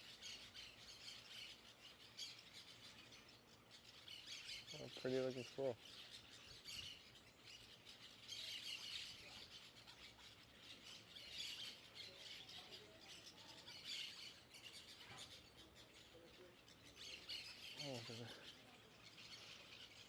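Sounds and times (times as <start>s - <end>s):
faint bird chirping: 0.0s - 20.0s.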